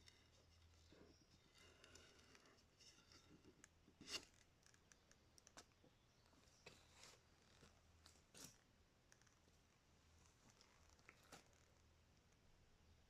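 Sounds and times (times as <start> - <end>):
rustling scrapes: 0.0 - 4.5.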